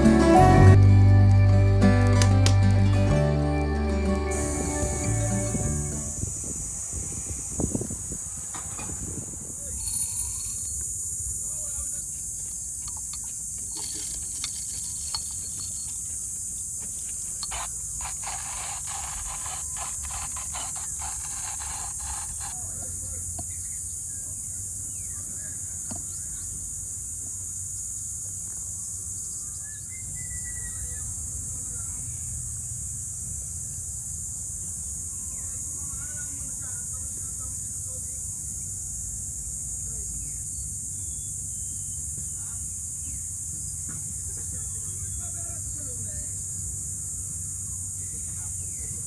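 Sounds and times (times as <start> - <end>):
high-pitched insect chorus: 0.0 - 49.0
rustling and clicking: 12.4 - 22.6.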